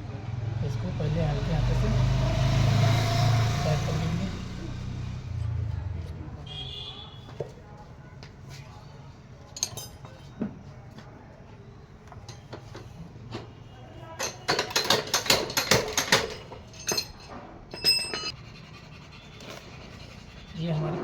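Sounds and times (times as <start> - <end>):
metal tools clinking and rattling: 9.5 - 10.4, 14.2 - 18.4
short metallic ring: 16.7 - 18.3.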